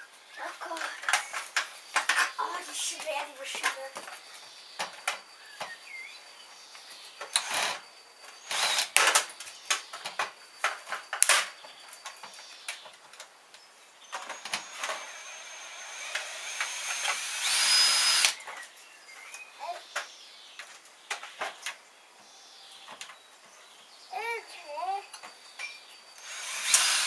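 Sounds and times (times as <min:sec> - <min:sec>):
power drill whirring: 0:07.4 - 0:07.8, 0:08.4 - 0:09.0, 0:14.4 - 0:18.4, 0:26.2 - 0:27.0.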